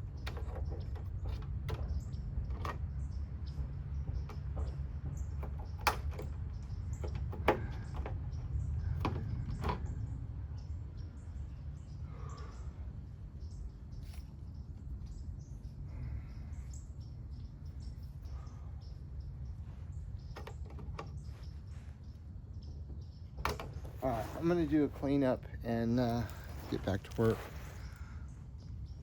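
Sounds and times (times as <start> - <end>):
steady low hum: 0.0 - 29.0
plastic handle clicks: 23.4 - 23.8.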